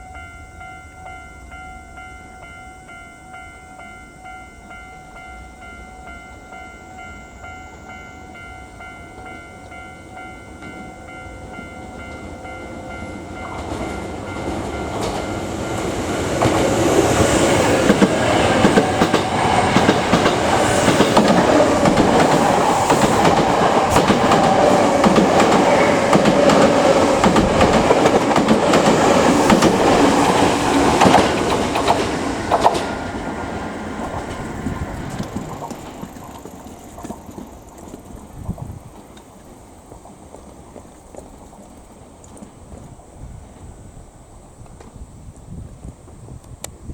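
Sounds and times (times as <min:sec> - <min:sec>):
level-crossing warning bell: 0:00.0 - 0:37.7
electric trains passing: 0:00.0 - 0:46.9
wheel clatter over rail joints: 0:13.4 - 0:43.0.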